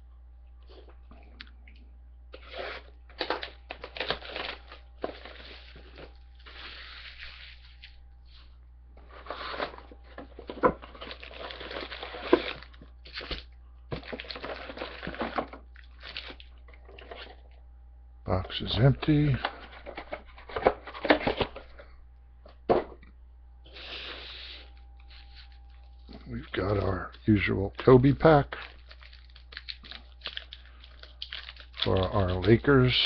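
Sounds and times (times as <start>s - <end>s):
faint low hum: 0.0s - 33.0s
plastic wrap crinkling and tearing: 2.4s - 8.0s, 10.4s - 17.4s, 25.0s - 33.0s
cardboard rustling: 2.4s - 17.5s, 19.4s - 21.8s.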